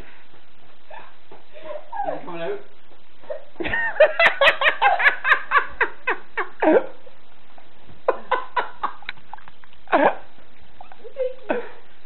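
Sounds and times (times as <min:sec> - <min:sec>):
person laughing: 0:03.3 - 0:07.0.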